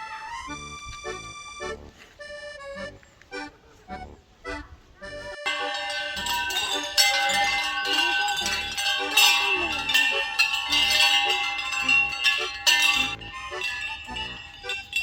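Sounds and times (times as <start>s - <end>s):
music with held notes: 0.0s - 15.0s
bell-like percussion strikes: 5.5s - 15.0s.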